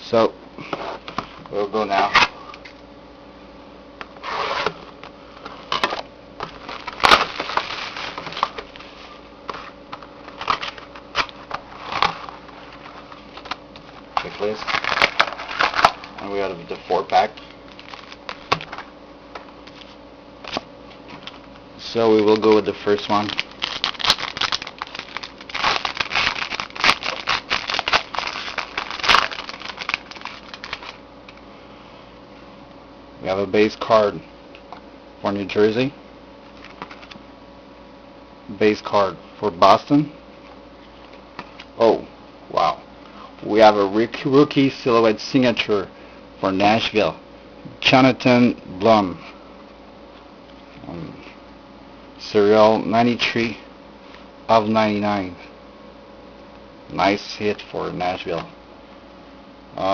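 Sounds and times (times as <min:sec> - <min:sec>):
plastic wrap and cardboard crinkling: 0:05.7 - 0:13.6, 0:14.2 - 0:18.7, 0:22.2 - 0:31.0.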